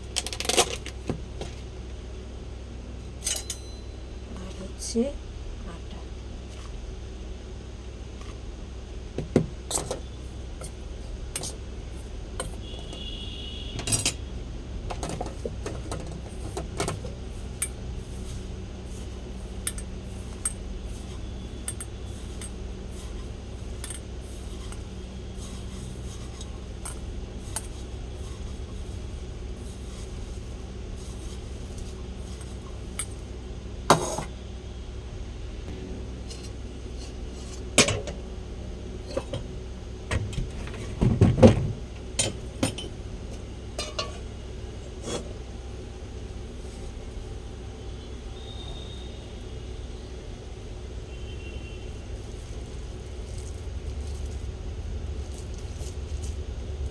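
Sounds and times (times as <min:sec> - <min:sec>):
spoon clinking against bowl: 0:19.6 - 0:28.4.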